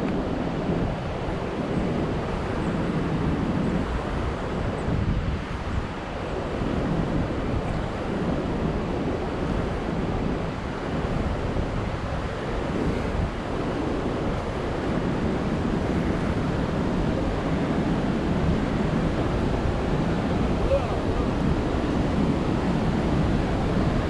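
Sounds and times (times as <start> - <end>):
wind rumbling on microphone: 0.0 - 24.0
waterfall rushing: 16.0 - 24.0.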